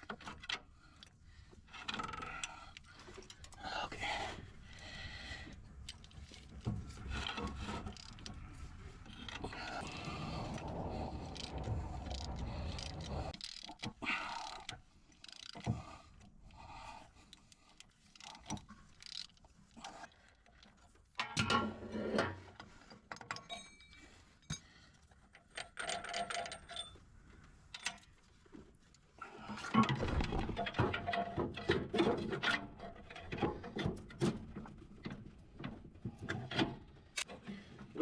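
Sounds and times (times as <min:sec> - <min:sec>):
metal tools clinking and rattling: 0:23.2 - 0:24.7, 0:25.4 - 0:27.0.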